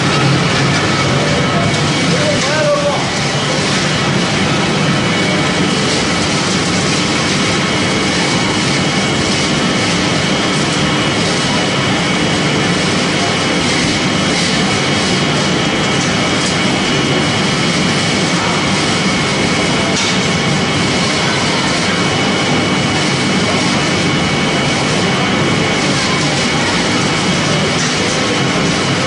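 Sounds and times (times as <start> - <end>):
pellet machine running: 0.0 - 29.0.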